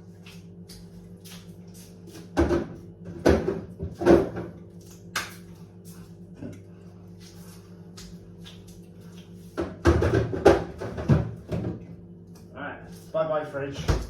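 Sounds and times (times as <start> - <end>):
steady low hum: 0.0 - 14.0
knocks and clunks at a fridge: 2.1 - 4.6, 9.5 - 12.0, 13.8 - 14.0.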